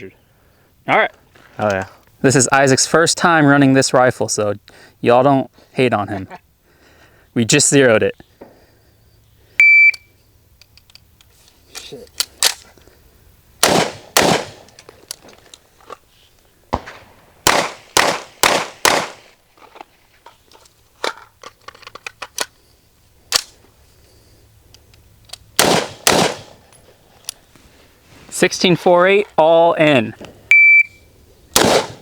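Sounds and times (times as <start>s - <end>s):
gun handling clicks: 9.9s - 12.9s, 13.6s - 16.0s, 20.5s - 22.6s, 23.3s - 23.6s, 24.6s - 27.5s
pistol shots: 13.6s - 14.7s, 16.7s - 19.3s, 25.6s - 26.6s, 31.5s - 32.0s
rifle shots: 13.6s - 14.7s, 16.7s - 19.3s, 25.6s - 26.6s, 31.5s - 32.0s.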